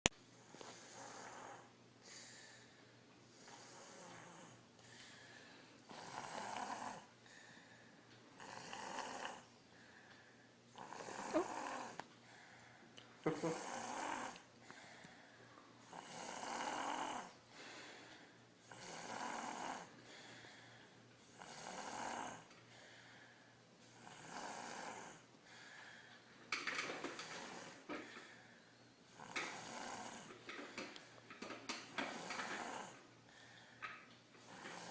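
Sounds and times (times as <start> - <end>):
child snoring: 0.6 - 1.7, 3.5 - 4.6, 5.9 - 7.1, 8.4 - 9.5, 10.8 - 12.0, 13.2 - 14.5, 15.9 - 17.4, 18.7 - 20.0, 21.3 - 22.5, 23.9 - 25.3, 27.0 - 27.9, 29.1 - 30.4, 31.9 - 33.0, 34.4 - 34.9.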